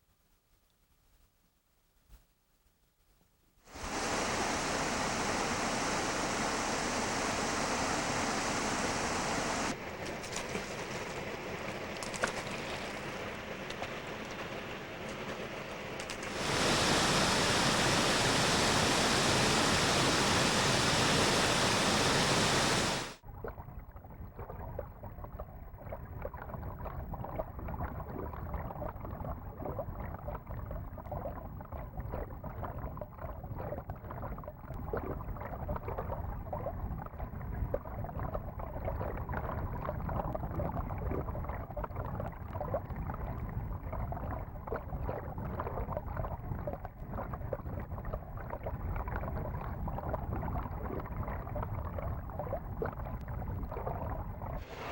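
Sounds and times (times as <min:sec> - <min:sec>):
loud steady hiss: 0:03.7 - 0:09.7, 0:16.2 - 0:23.2, 0:54.6 - 0:54.9
crackling rush of water: 0:03.7 - 0:23.2, 0:25.9 - 0:54.9.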